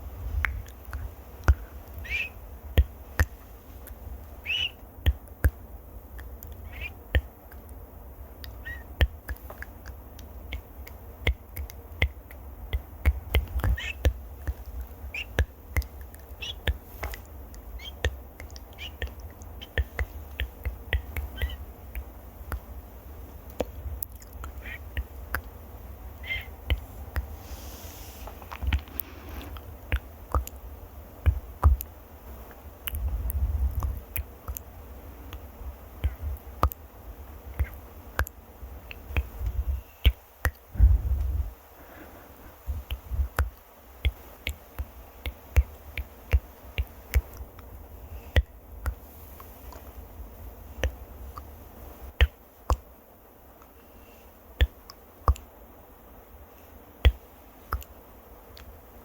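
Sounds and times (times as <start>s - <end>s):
rubbing on microphone: 26.3s - 29.7s
sharp clicks and taps: 31.2s - 31.9s, 54.6s - 55.5s.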